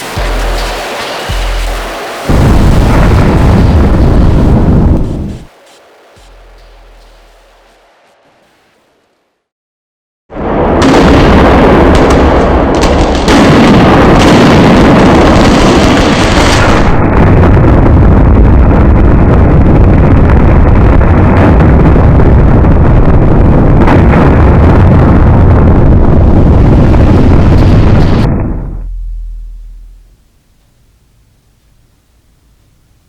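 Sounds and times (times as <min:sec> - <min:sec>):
fireworks exploding: 0:00.0 - 0:08.9, 0:10.8 - 0:17.0, 0:26.3 - 0:30.2.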